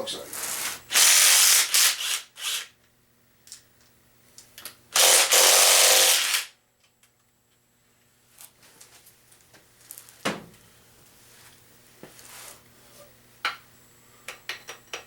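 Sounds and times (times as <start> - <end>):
handheld power tool running: 0.4 - 2.7, 4.9 - 6.5.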